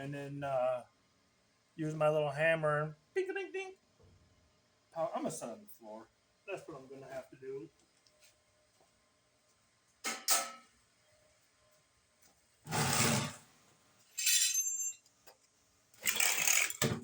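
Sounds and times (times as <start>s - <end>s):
metallic clinks: 14.2s - 15.1s.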